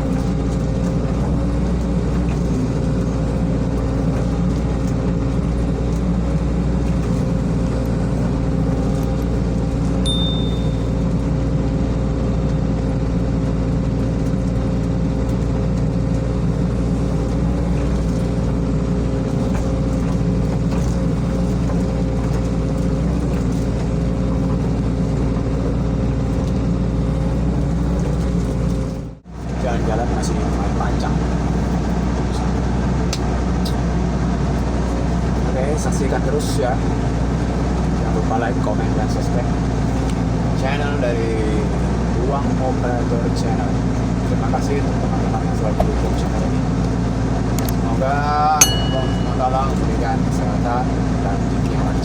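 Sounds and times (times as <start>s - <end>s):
excavator diesel engine running: 0.0s - 52.0s
high-pitched tone: 10.1s - 11.0s, 48.6s - 49.6s.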